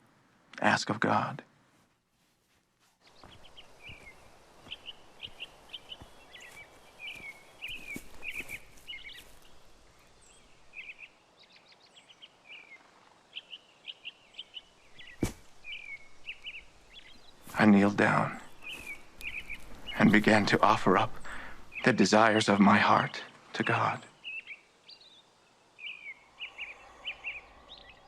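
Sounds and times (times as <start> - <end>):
faint outdoor background: 0.0 - 28.0
songbirds chirping: 0.0 - 28.0.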